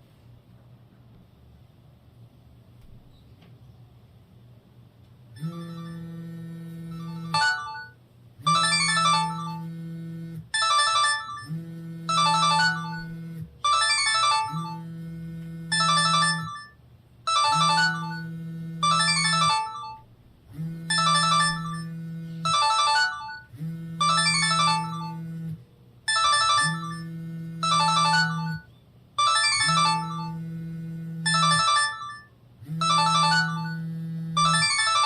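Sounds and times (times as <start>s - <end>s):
mobile phone melody ringtone: 5.4s - 25.5s, 26.1s - 35.0s.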